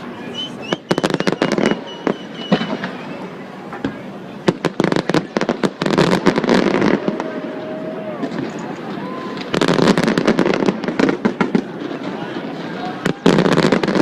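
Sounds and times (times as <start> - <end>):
fireworks bangs and crackles: 0.0 - 14.0
faint whistling tones: 0.1 - 3.5.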